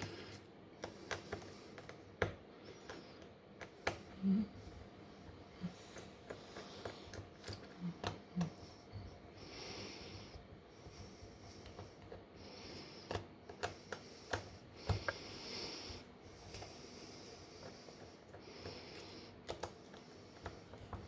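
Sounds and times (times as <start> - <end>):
small tools clicking and tapping: 5.9 - 8.6, 13.0 - 15.2.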